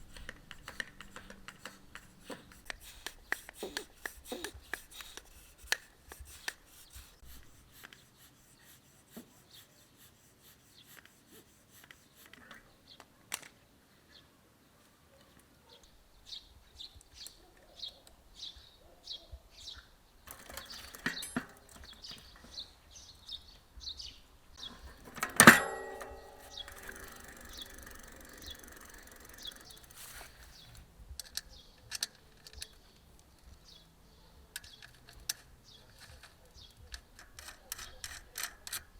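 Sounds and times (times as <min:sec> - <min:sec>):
small handling clicks: 0:00.0 - 0:07.2, 0:11.8 - 0:13.6, 0:20.3 - 0:22.6, 0:24.6 - 0:33.8, 0:34.5 - 0:38.9
birds chirping: 0:13.8 - 0:37.2.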